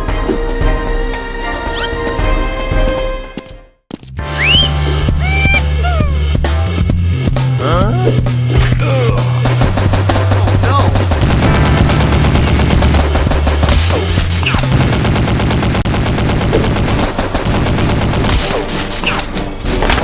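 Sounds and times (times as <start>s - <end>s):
background music with bass line: 4.2s - 9.7s
rapid machine gun fire: 9.4s - 19.0s.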